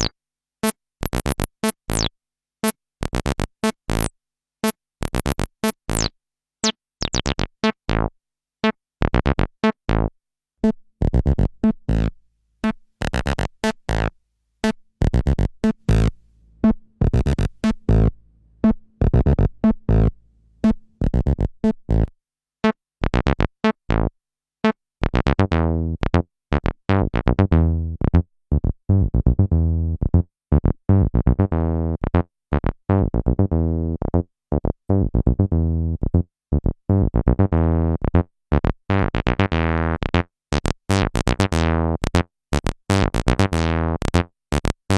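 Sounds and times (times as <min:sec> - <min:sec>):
synthesizer acid bassline: 0:01.1 - 0:02.1, 0:03.9 - 0:04.1, 0:05.2 - 0:06.1, 0:07.0 - 0:08.1, 0:15.0 - 0:22.1.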